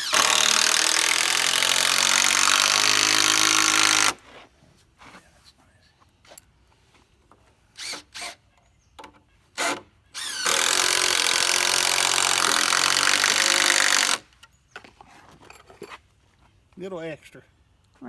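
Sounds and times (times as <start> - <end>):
power drill driving screw into wood: 0.0 - 4.2, 7.8 - 8.4, 9.6 - 14.2.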